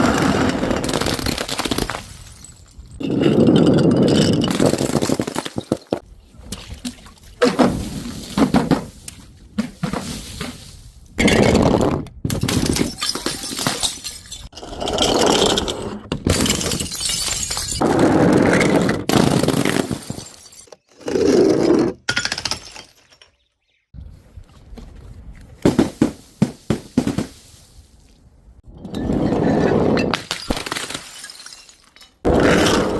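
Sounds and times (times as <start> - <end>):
glass bottles shattering: 0.8 - 6.0, 12.3 - 14.6, 16.2 - 17.8, 19.4 - 20.9, 22.1 - 23.5, 30.0 - 32.3.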